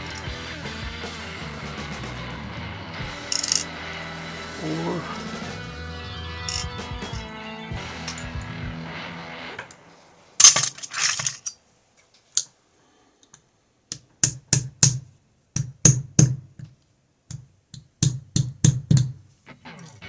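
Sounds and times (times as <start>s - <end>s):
metal rattle: 3.2s - 3.7s, 6.5s - 6.9s, 7.8s - 8.6s, 10.4s - 11.6s.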